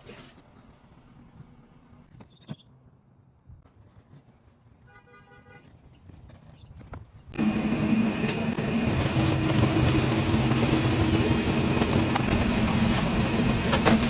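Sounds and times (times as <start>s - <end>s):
vacuum running at full suction: 7.4s - 14.0s.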